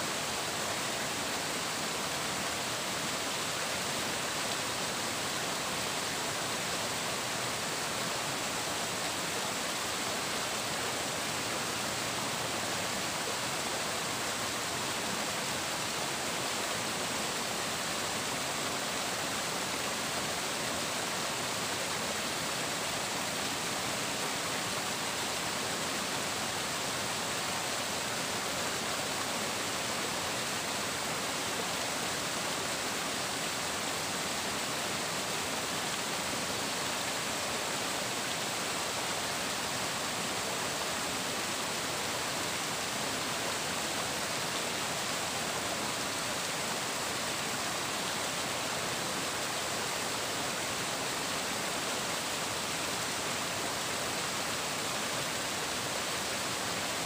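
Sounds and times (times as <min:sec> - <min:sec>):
water flowing and splashing: 0:00.0 - 0:57.0.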